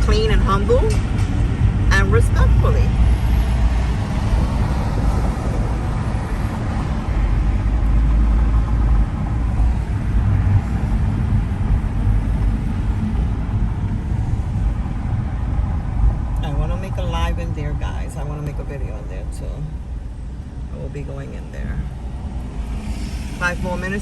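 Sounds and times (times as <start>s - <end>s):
car engine and road rumble: 0.0s - 24.0s.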